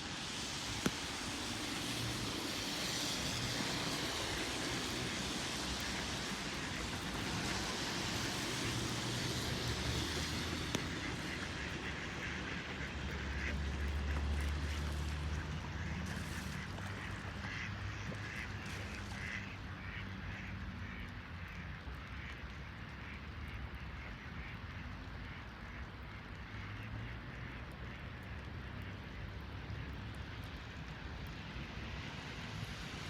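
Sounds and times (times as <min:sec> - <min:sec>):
ducks quacking: 0:05.0 - 0:21.1.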